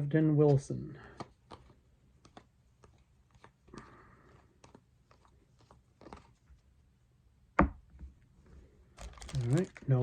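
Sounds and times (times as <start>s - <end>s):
trading cards being handled: 0.4s - 6.7s, 8.9s - 10.0s.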